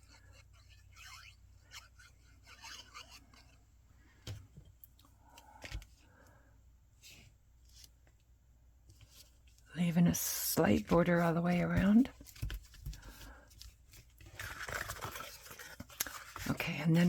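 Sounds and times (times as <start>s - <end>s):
cardstock rustling and scraping: 9.0s - 17.0s.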